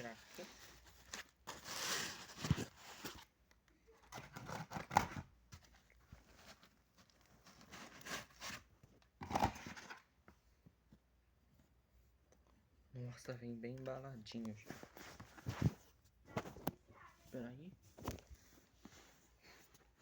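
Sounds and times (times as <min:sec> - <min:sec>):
packaging rustling and crinkling: 0:00.0 - 0:03.3.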